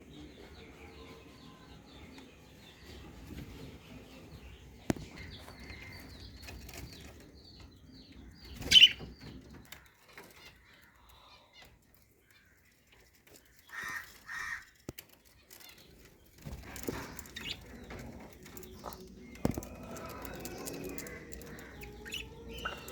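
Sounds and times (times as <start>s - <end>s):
budgerigars chirping: 8.4s - 9.4s, 16.8s - 22.9s.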